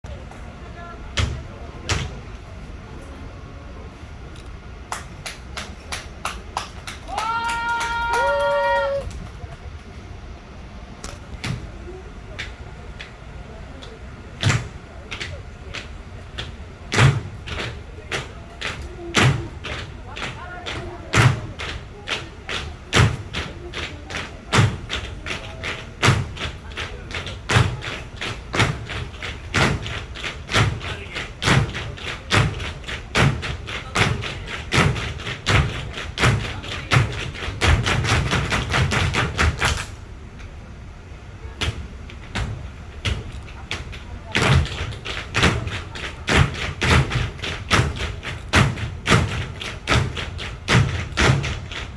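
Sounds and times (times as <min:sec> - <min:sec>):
tap shoes on stage floor: 0:04.9 - 0:09.4, 0:13.8 - 0:39.9, 0:41.6 - 0:51.9
heavy stamps: 0:41.6 - 0:51.9
tap shoes tapping on floor: 0:42.4 - 0:51.9.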